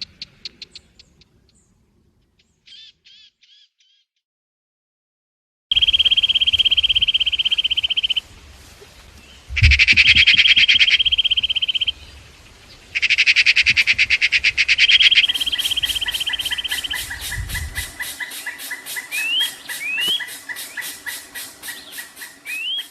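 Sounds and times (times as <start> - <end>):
fast even bird ticking: 0.0 - 1.4, 5.7 - 8.2, 9.5 - 12.0, 13.0 - 22.9
bird trilling: 5.7 - 8.2, 9.5 - 12.1, 13.0 - 22.9
harsh buzzy bird chattering: 9.6 - 11.9, 13.0 - 22.9
short rising bird whistles: 21.7 - 22.9.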